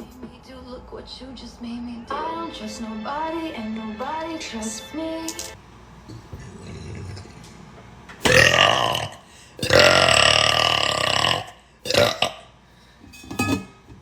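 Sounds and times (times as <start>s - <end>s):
person belching: 6.1s - 7.5s, 8.2s - 12.5s.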